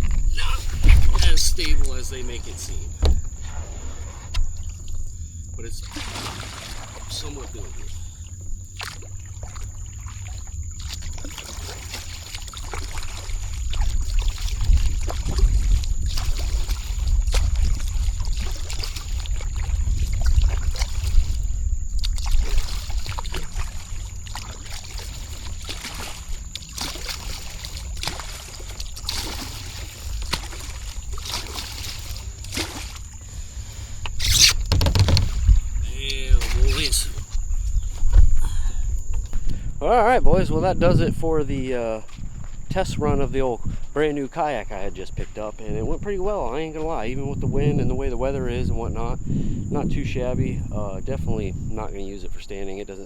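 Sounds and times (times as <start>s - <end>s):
wind rumble on microphone: 0.0s - 5.8s, 6.8s - 53.0s
water sloshing and trickling: 0.0s - 39.7s.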